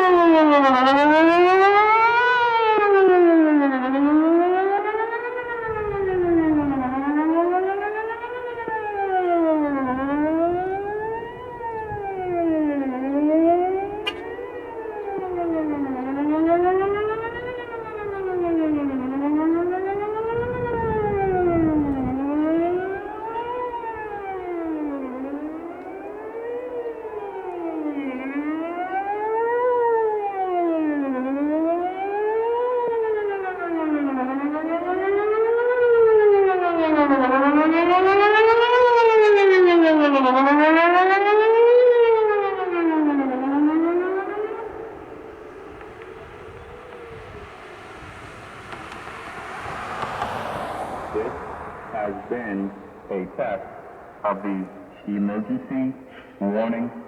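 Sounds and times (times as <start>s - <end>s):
outdoor warning siren sweeping: 0.0s - 57.0s.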